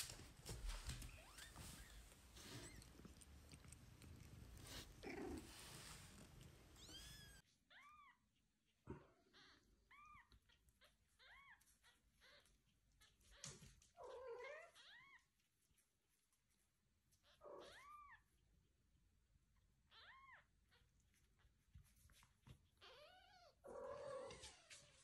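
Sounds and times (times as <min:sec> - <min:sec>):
faint shuffling: 0:00.0 - 0:07.4.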